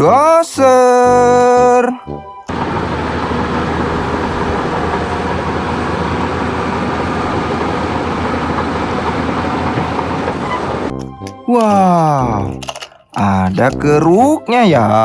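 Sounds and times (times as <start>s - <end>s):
heavy vehicle engine rumble: 2.5s - 11.2s.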